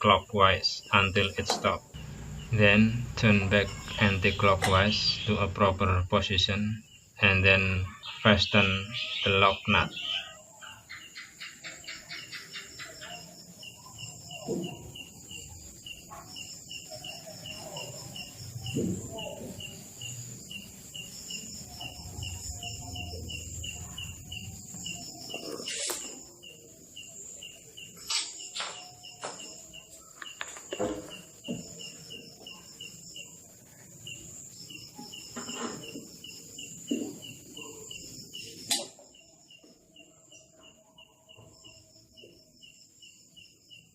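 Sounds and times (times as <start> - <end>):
crickets chirping: 0.0 - 43.9.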